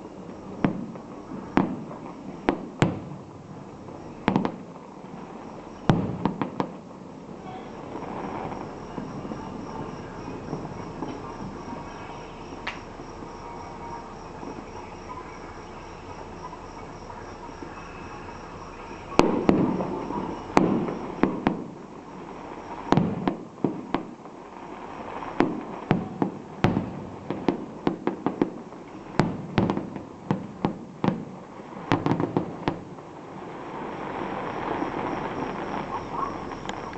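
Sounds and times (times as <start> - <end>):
crickets chirping: 0.0 - 36.9
fireworks bangs: 0.0 - 36.9.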